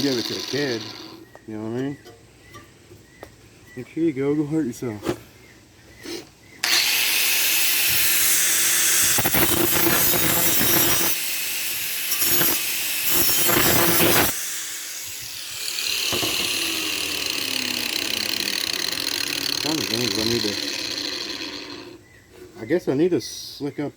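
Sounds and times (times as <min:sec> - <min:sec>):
electric grinder grinding steel: 0:00.0 - 0:01.3, 0:06.6 - 0:22.0.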